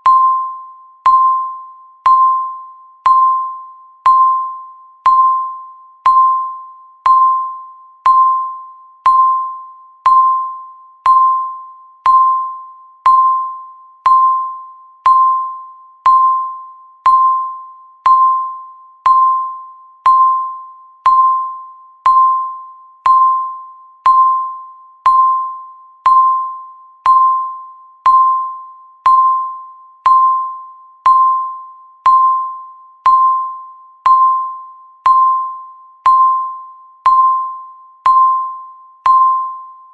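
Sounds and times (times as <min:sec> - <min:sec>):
countdown timer beeping: 0:00.0 - 0:39.9.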